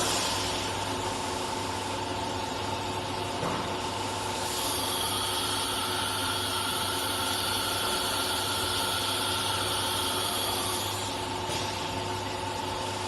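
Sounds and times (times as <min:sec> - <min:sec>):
machine hum: 0:03.9 - 0:13.0
router spindle whine: 0:04.6 - 0:11.2.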